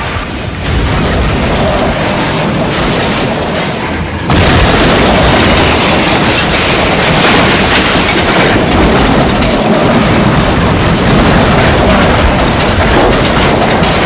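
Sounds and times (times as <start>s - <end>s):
train crash rumble: 0.0s - 14.0s.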